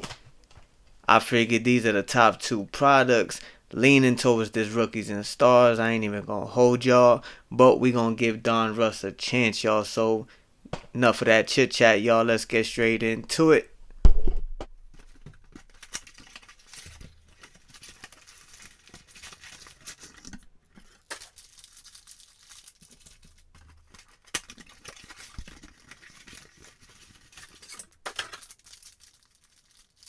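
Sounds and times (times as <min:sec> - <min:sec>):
packaging crinkling and tearing: 0:15.0 - 0:30.0.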